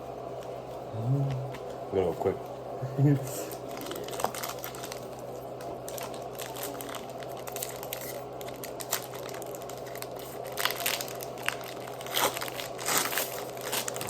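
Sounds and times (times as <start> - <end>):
foil wrappers crinkling: 3.3 - 14.0.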